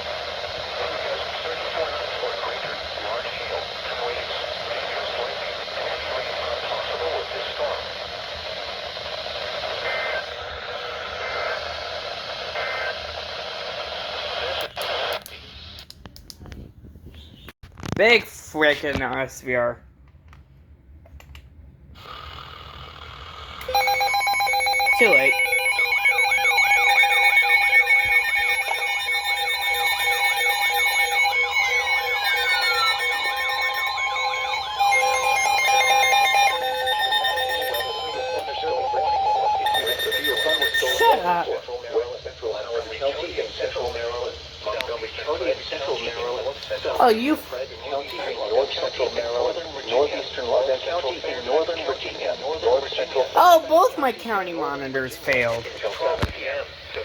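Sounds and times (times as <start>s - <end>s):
radio static hiss: 0.0s - 15.8s, 23.6s - 57.0s
pulsing beeps: 23.6s - 41.5s
two-tone alert data bursts: 23.6s - 41.6s
rising and falling siren sweep: 23.7s - 41.2s.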